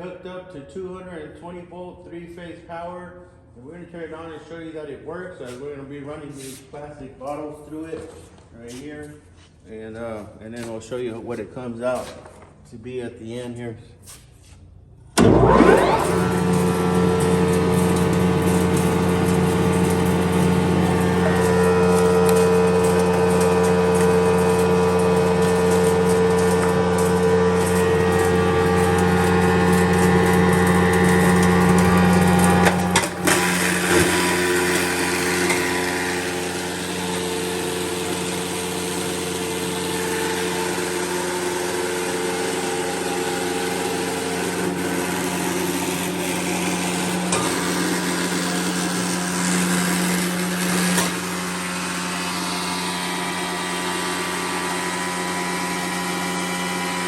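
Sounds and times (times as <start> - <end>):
cutter rotor whirring: 15.2 - 37.2
electric motor hum: 15.2 - 57.0.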